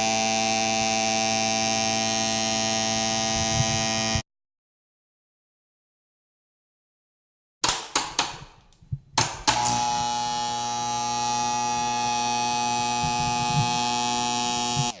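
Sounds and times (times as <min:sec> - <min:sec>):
loud electric buzz: 0:00.0 - 0:04.2, 0:09.3 - 0:15.0
electric arc zaps: 0:09.3 - 0:15.0.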